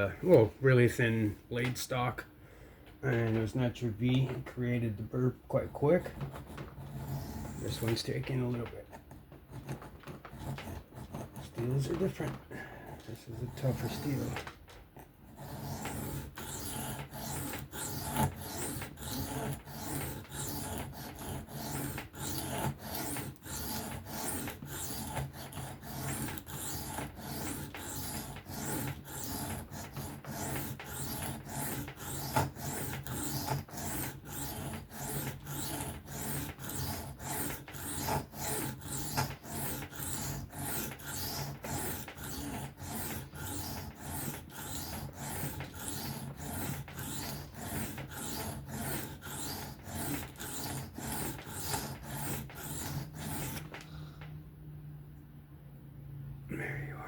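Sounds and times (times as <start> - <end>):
knife rasping on sharpening plate: 15.4 - 53.7.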